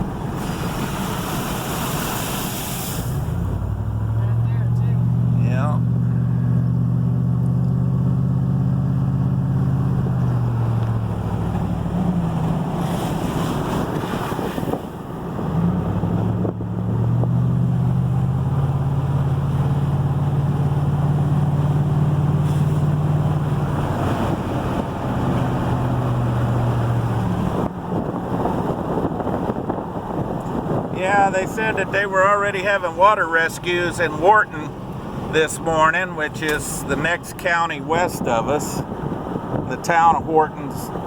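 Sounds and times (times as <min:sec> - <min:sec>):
road noise: 0:00.0 - 0:41.0
vehicle engine hum: 0:00.0 - 0:41.0
brief hissing surges: 0:01.1 - 0:03.3.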